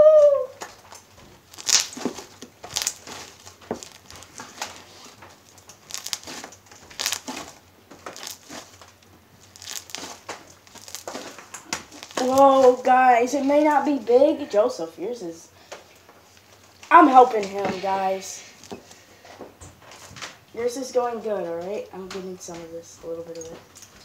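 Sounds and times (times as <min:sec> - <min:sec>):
slime crackling and popping: 0:00.6 - 0:13.8, 0:16.3 - 0:19.1.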